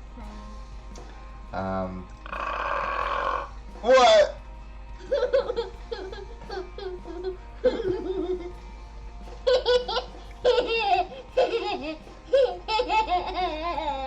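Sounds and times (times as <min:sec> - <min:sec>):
young child laughing: 0:03.8 - 0:04.4, 0:05.0 - 0:08.5, 0:09.4 - 0:14.0.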